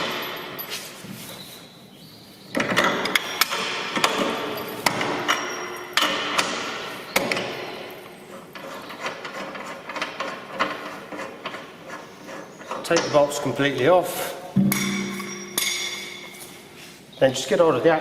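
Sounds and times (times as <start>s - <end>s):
metal tool clanking on bolt nut: 2.6s - 7.5s, 14.6s - 16.4s.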